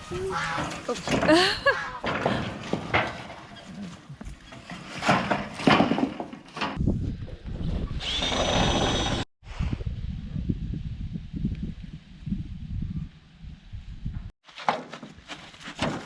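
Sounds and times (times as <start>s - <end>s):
wooden knocks and clatter: 0.5s - 3.6s, 4.2s - 6.8s, 14.6s - 16.0s
power drill running: 8.0s - 9.2s.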